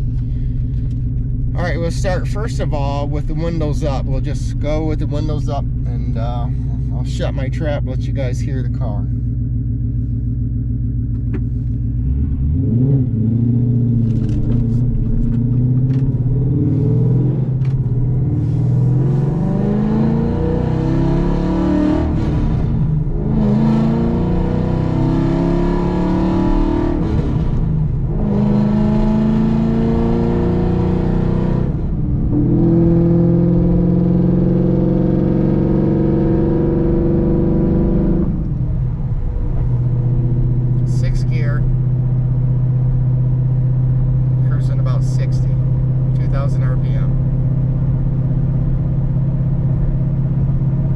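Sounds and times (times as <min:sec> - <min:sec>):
car engine revving from inside: 0:11.1 - 0:50.9.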